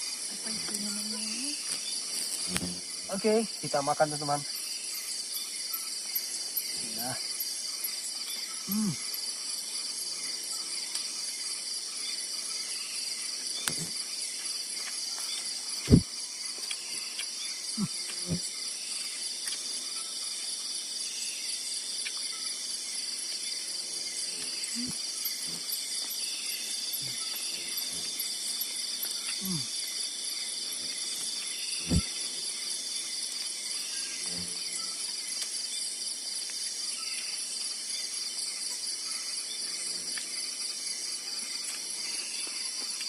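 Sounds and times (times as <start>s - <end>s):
night insects chorus: 0.0s - 43.0s.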